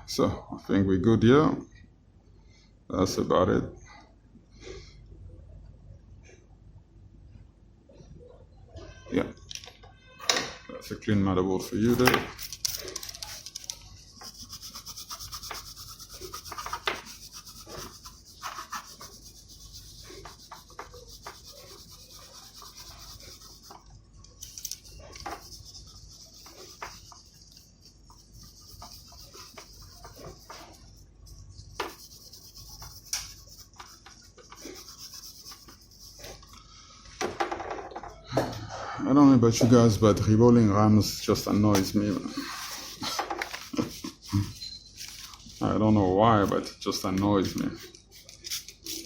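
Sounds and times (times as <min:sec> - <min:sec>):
hand tools rubbing and tapping: 0:11.8 - 0:36.6.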